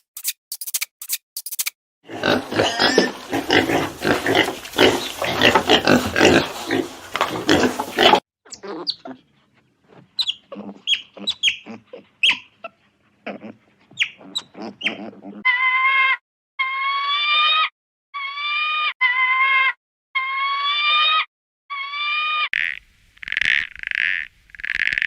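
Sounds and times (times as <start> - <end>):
pigs calling: 2.1 - 17.7.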